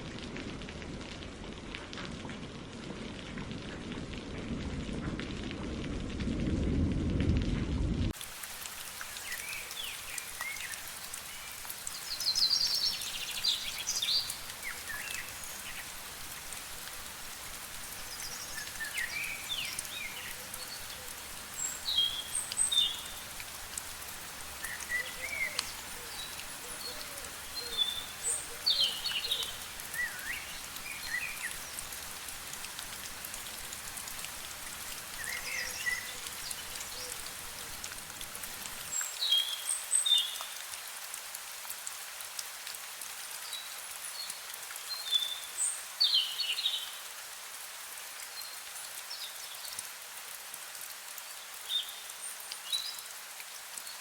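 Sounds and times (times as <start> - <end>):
heavy rain rushing: 0.0 - 43.0
steady light rain: 0.0 - 54.0.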